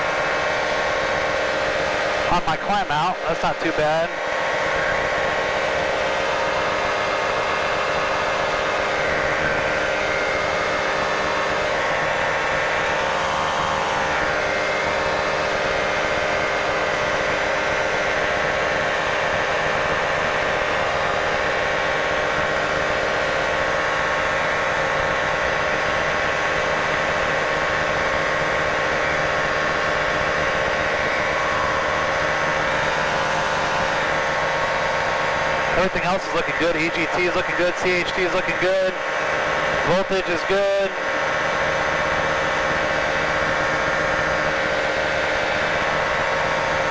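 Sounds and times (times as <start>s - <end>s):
light aircraft engine droning: 0.0s - 46.9s.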